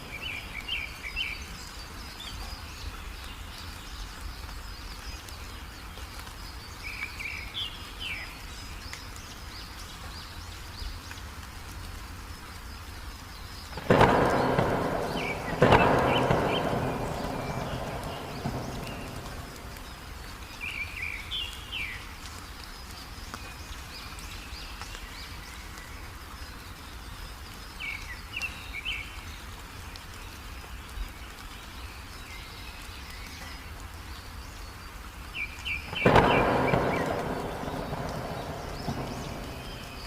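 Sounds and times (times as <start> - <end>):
small songbird chirping: 0.0 - 11.4, 12.1 - 40.0
faint rain hiss: 0.0 - 40.0
loud rush of noise: 13.8 - 20.4, 36.0 - 40.0.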